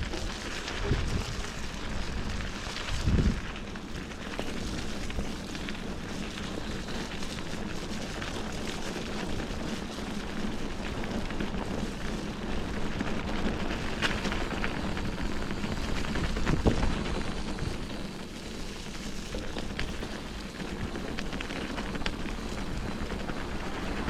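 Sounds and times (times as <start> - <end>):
wind on microphone: 0.0 - 3.6, 13.5 - 18.1
bicycle tyres rolling on trail: 0.0 - 24.0.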